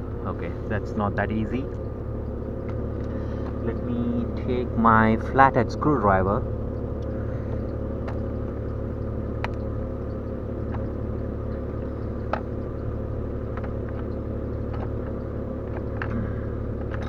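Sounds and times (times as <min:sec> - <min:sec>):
low engine-like hum: 0:00.0 - 0:17.0
light clicks and taps: 0:06.7 - 0:17.0.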